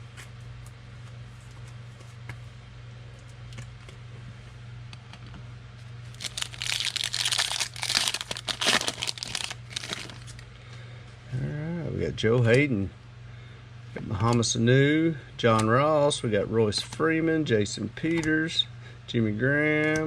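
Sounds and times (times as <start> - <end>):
steady low hum: 0.0 - 20.0
foil wrapper tearing and crinkling: 6.1 - 10.4.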